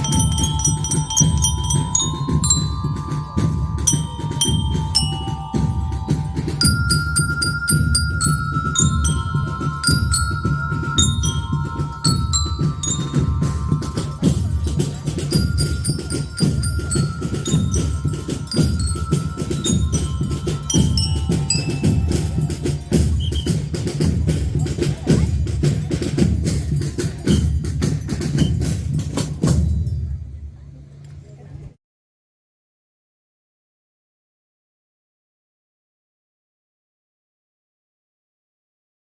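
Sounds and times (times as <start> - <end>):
bell lyres playing melody: 0.0 - 30.2
drums beating: 0.0 - 31.0.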